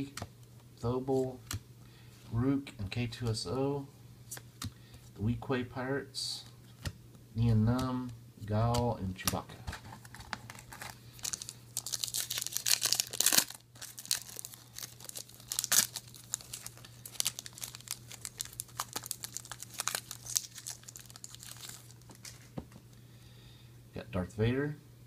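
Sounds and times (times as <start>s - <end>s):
card pack wrapper crinkling: 9.2s - 22.6s.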